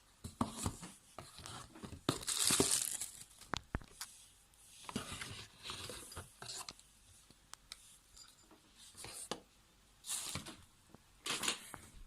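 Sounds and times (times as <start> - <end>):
packaging crinkling and tearing: 2.2 - 3.7.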